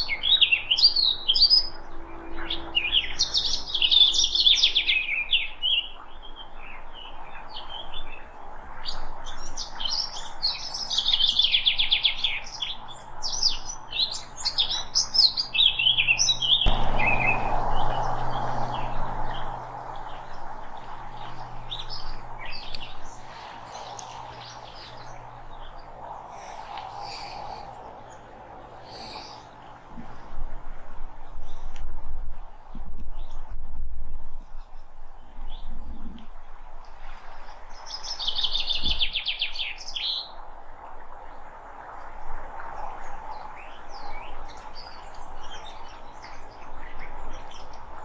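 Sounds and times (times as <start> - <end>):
songbirds chirping and singing: 0.0 - 30.2, 37.7 - 40.3.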